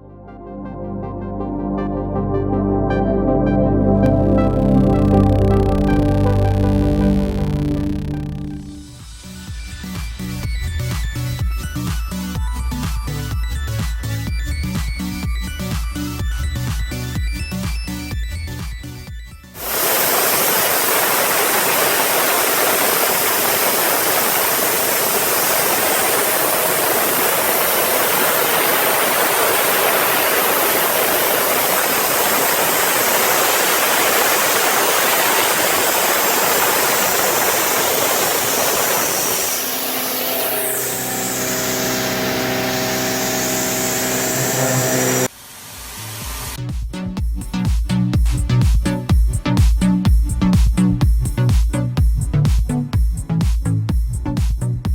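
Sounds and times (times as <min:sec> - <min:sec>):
machine humming tones: 0:01.8 - 0:11.7, 0:19.6 - 0:46.6
milling cutter hissing through steel: 0:19.6 - 0:46.6.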